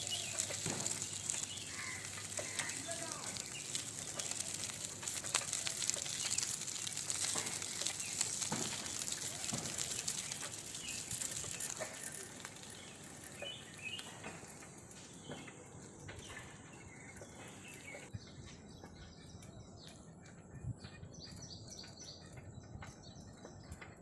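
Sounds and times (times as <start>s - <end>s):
wind hiss: 0.0s - 15.3s
small crackles: 0.0s - 24.0s.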